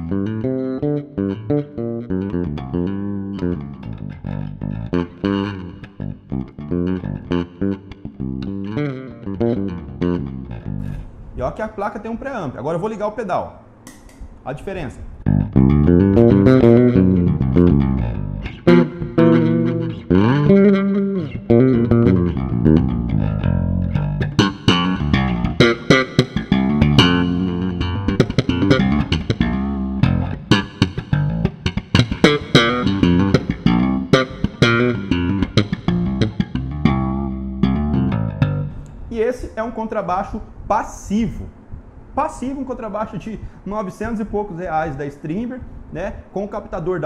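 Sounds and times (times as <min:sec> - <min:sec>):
electric bass plucked notes: 0:00.0 - 0:11.3, 0:15.2 - 0:39.1.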